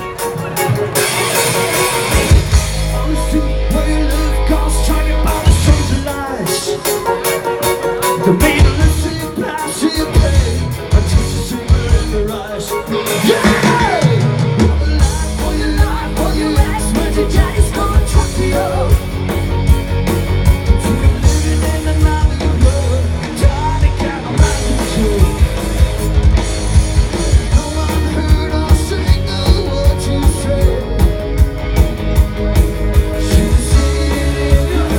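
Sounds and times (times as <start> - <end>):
live rock band: 0.0 - 34.9
steady drum beat: 0.0 - 34.9
person singing: 2.8 - 19.2, 20.6 - 25.8, 27.2 - 31.4, 33.1 - 34.9.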